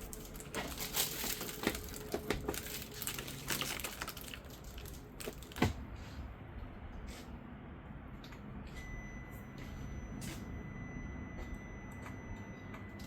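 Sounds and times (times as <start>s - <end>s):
handling clicks and rustles: 0.0s - 5.8s.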